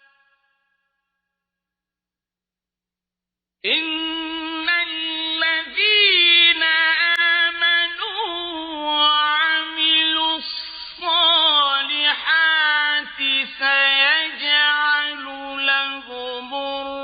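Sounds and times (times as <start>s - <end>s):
man chanting melodically: 3.7s - 17.0s.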